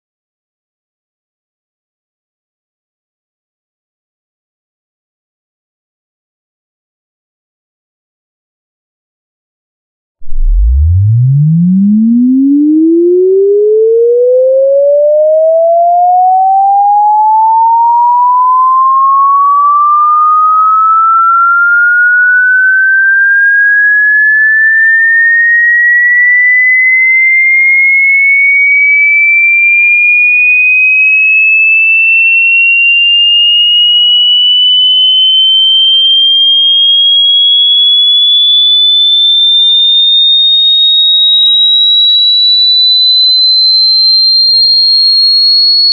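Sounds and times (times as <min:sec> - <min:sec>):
sine tone sweeping upward: 0:10.2 - 0:45.9.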